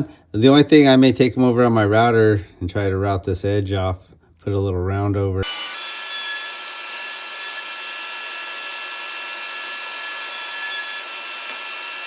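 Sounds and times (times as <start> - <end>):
router whining: 5.4 - 12.0.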